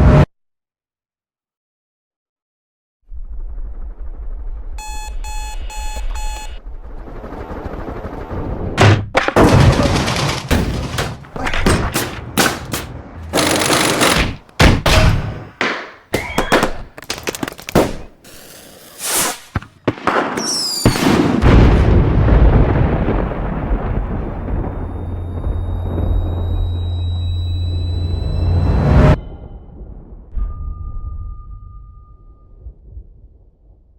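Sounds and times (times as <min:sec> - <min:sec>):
digital alarm clock beeping: 0:04.8 - 0:06.6
noisy bursts and impacts: 0:06.6 - 0:15.6
low rumble: 0:21.5 - 0:33.9.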